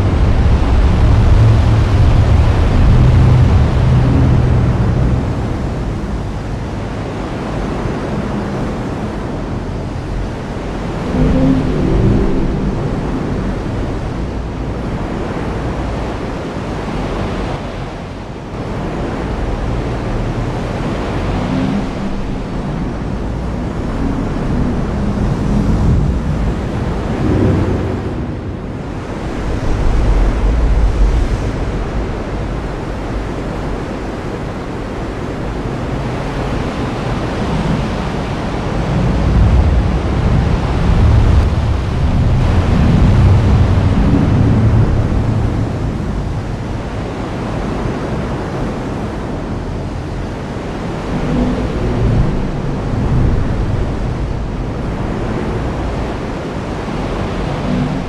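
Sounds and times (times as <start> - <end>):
heavy rain: 0.0 - 58.0
thunder rumbles: 8.6 - 15.2, 21.2 - 33.5.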